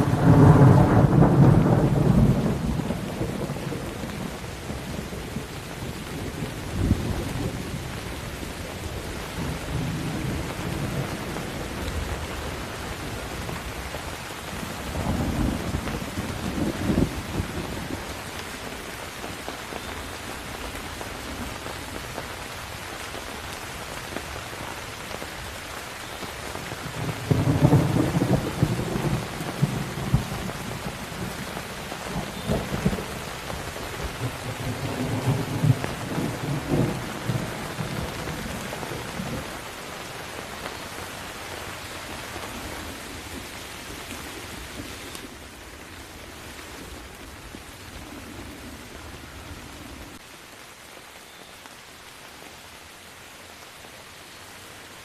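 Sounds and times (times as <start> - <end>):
rolling thunder: 0.0 - 7.9, 26.8 - 39.6
steady rain: 0.0 - 55.0.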